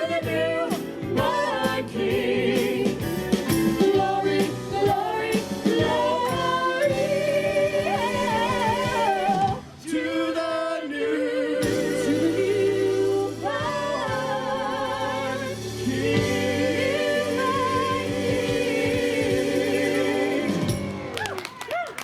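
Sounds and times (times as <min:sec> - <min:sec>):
vocal group singing in harmony: 0:00.0 - 0:21.2
low musical accompaniment: 0:11.6 - 0:21.2.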